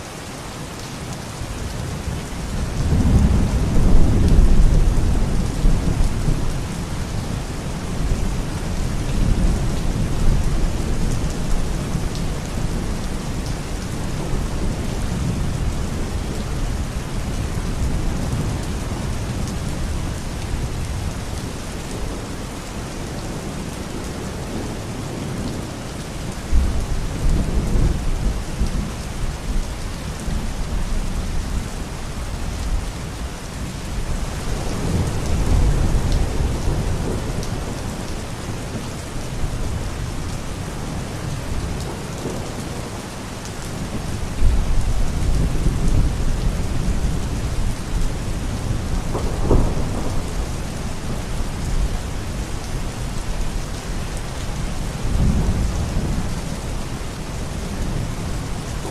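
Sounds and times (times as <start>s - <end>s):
steady rain hiss: 0.0s - 58.9s
rolling thunder: 2.8s - 6.8s, 43.8s - 52.4s.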